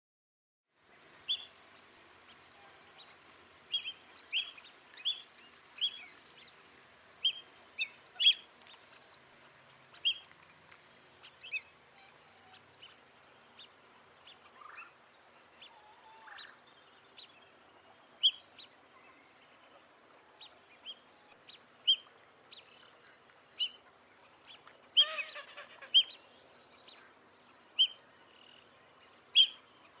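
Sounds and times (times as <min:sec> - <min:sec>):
faint high-pitched whine: 0:00.8 - 0:30.0
ducks whistling calls: 0:25.0 - 0:26.2.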